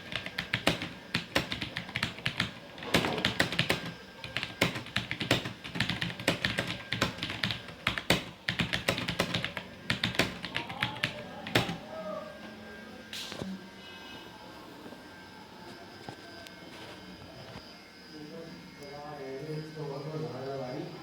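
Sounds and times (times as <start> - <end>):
mechanical keyboard typing: 0.0 - 11.8.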